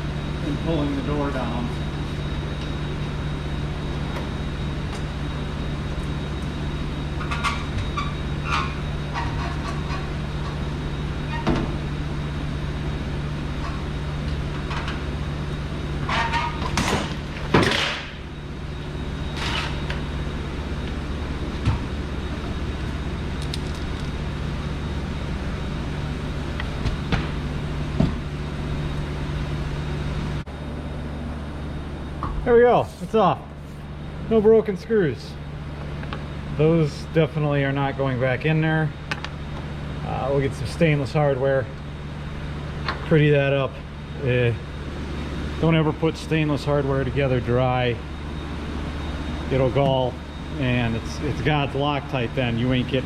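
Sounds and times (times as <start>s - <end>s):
low machine hum: 0.0s - 53.0s.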